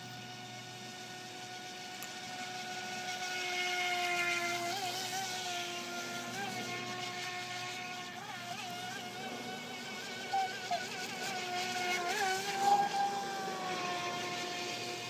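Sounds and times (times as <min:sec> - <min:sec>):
small electric motor whining: 0:00.0 - 0:15.0.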